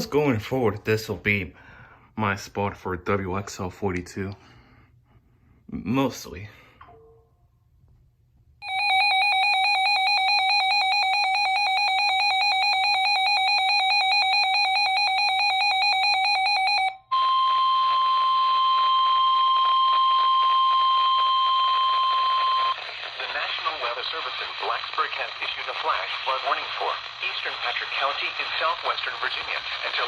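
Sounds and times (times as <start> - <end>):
steady warning alarm tone: 8.6 - 22.8
weather radio alarm beeping: 8.6 - 22.8.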